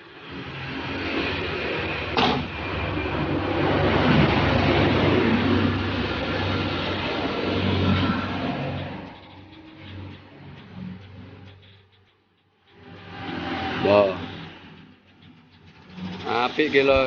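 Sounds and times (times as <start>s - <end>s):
diesel engine clattering: 1.6s - 17.0s
sharp clack: 2.2s - 2.5s.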